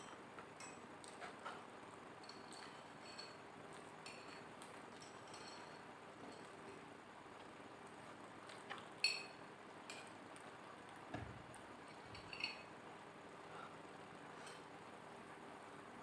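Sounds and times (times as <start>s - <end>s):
utensil clinking on plate: 2.2s - 3.4s, 4.0s - 6.5s, 9.0s - 10.1s, 11.9s - 12.7s.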